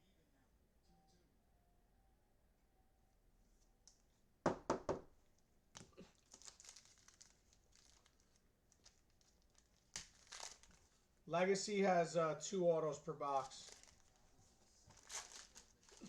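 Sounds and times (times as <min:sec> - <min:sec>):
sharp wrapper snaps: 0:05.8 - 0:10.8
card pack wrapper tearing and crinkling: 0:05.8 - 0:10.9, 0:13.4 - 0:14.3, 0:14.9 - 0:16.0.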